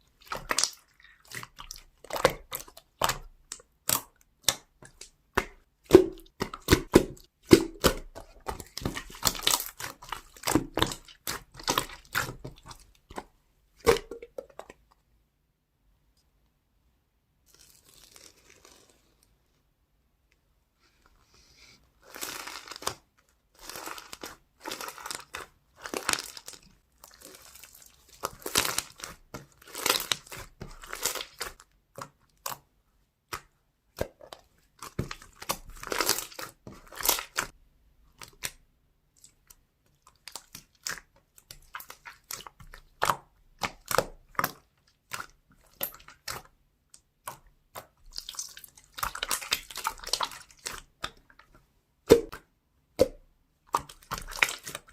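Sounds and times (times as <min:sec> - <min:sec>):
slime crackling and popping: 0:00.2 - 0:12.8, 0:23.6 - 0:32.6, 0:33.3 - 0:37.6, 0:40.2 - 0:51.4, 0:53.0 - 0:54.9.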